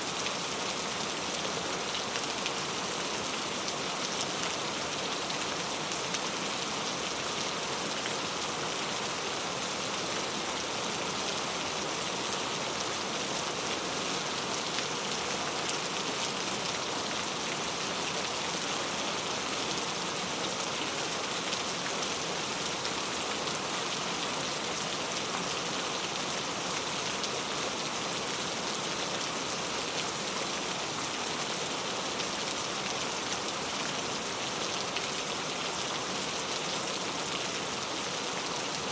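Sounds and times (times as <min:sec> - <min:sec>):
rain splashing into a puddle: 0:00.1 - 0:38.9.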